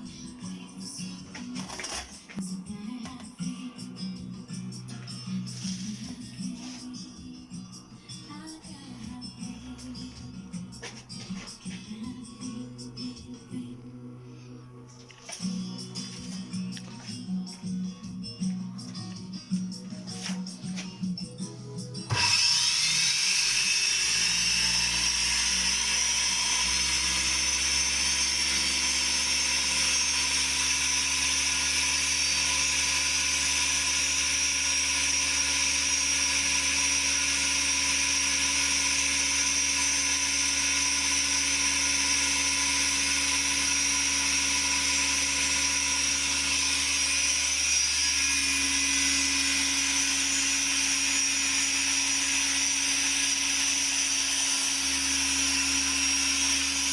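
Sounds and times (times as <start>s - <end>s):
circular saw whining: 22.0s - 56.9s.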